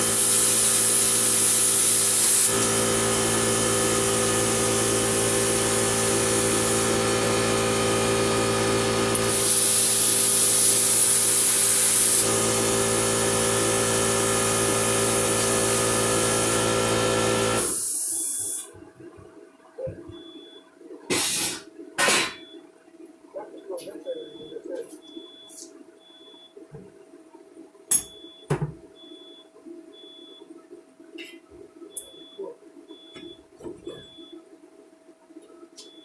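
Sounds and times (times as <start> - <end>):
plasma cutter hiss and buzz: 0.0 - 18.7, 21.1 - 21.6.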